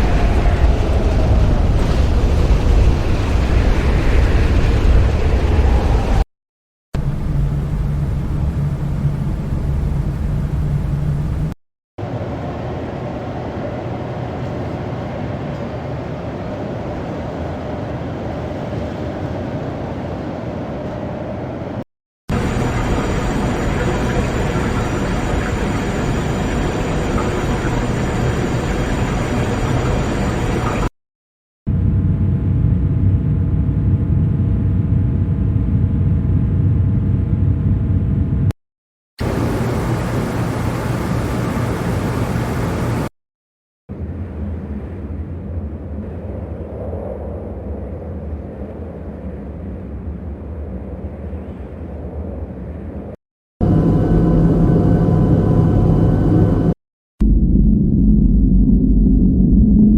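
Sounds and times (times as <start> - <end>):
steady low rumble: 0.0 - 6.3, 7.0 - 13.0, 21.7 - 30.9, 31.7 - 38.5, 39.2 - 43.1, 43.9 - 59.9
steady low noise drone: 7.0 - 14.5, 22.3 - 30.9, 31.7 - 38.5, 39.2 - 43.1, 53.6 - 59.9.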